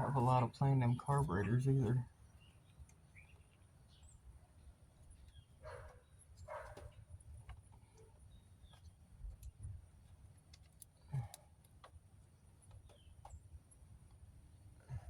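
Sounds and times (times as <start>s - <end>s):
dog barking faintly: 5.6s - 7.0s.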